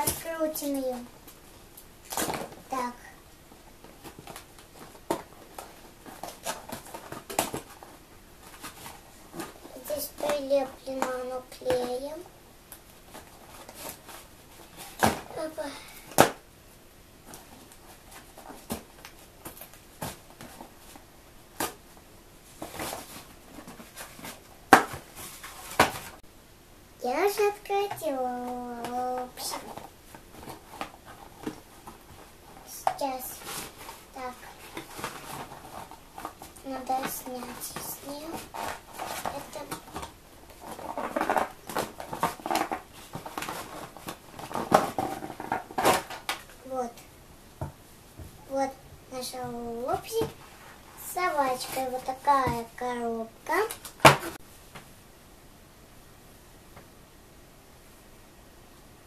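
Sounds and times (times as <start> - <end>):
packaging rustling: 3.8 - 9.7, 28.8 - 46.6.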